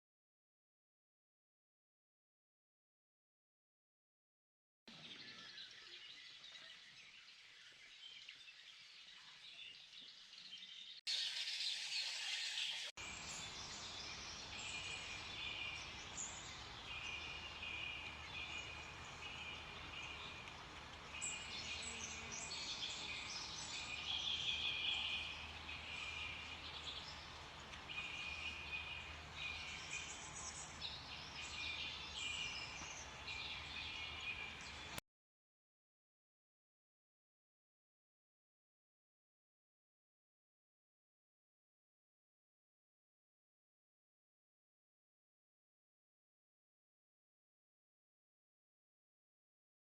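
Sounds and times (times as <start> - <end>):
bird chirps: 4.9 - 35.0
steady hiss and low hum: 13.0 - 35.0.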